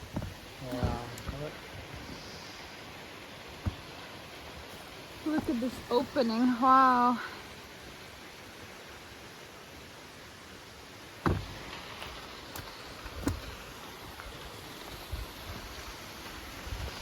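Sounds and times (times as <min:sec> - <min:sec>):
sharp thumps and knocks: 0:00.0 - 0:01.5, 0:11.2 - 0:11.6.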